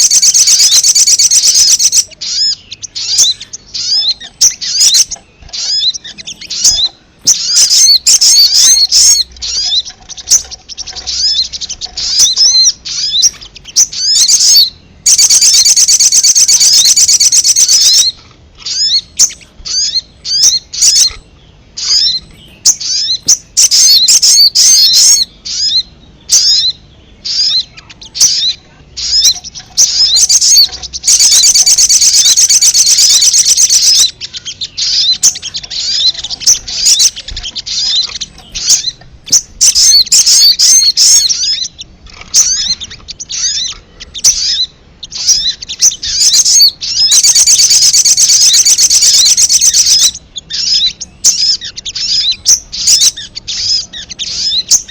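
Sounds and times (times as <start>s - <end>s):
birds chirping and trilling: 0.0s - 54.9s.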